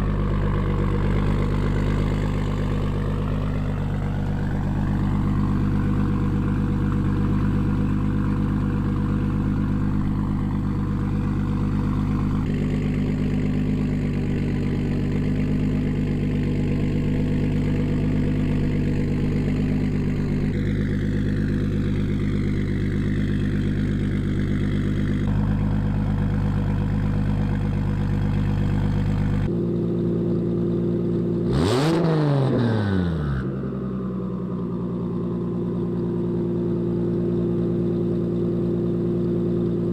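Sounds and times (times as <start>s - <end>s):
car engine revving: 0.0s - 29.5s, 31.4s - 33.6s
car engine idling: 0.0s - 31.8s, 33.4s - 39.9s.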